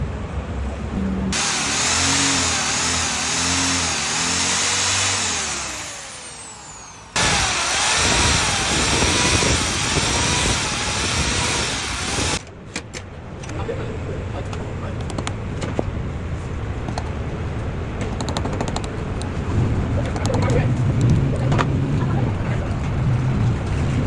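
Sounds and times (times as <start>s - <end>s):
motorcycle engine revving: 0.9s - 12.4s.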